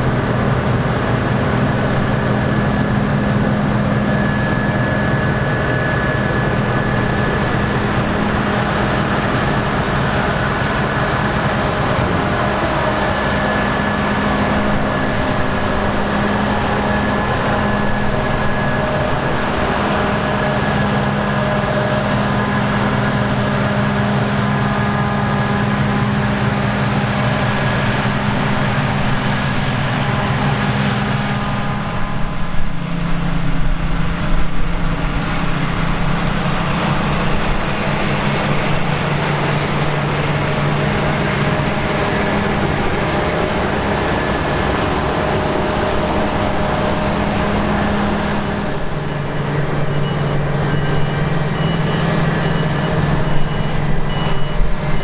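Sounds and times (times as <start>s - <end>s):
heavy diesel engine running: 0.0s - 55.0s
high warning beeps: 49.1s - 55.0s.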